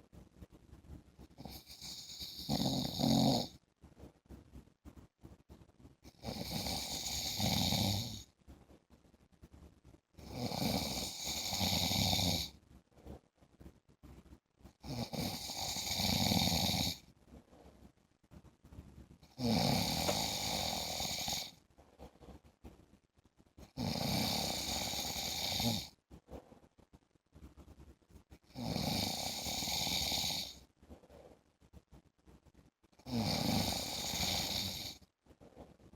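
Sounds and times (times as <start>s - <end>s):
man snoring: 1.4s - 3.5s, 6.2s - 8.2s, 10.2s - 12.5s, 14.8s - 17.0s, 19.4s - 21.5s, 23.8s - 25.9s, 28.6s - 30.6s, 33.1s - 35.0s.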